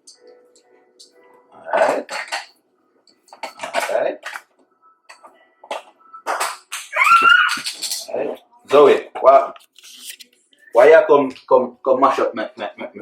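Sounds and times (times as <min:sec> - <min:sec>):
utensils and dishes clattering: 0:01.0 - 0:04.5, 0:05.1 - 0:10.0.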